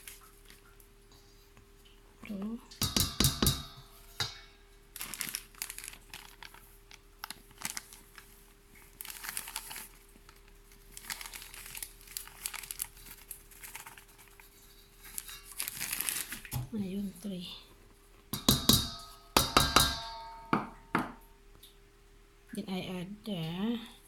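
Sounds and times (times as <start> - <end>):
flour bag crinkling: 4.8 - 17.4.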